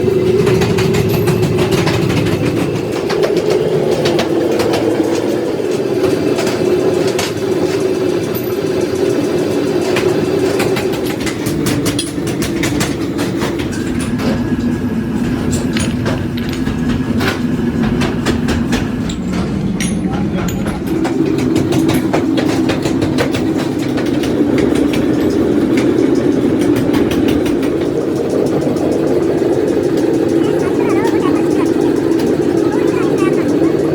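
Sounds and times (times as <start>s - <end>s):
machinery droning: 25.2s - 33.9s.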